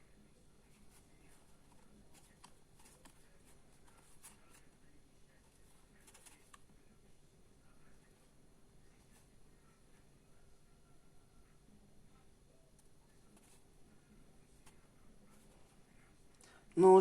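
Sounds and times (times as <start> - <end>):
cards clicking and rustling: 0.8 - 4.7, 5.6 - 6.7.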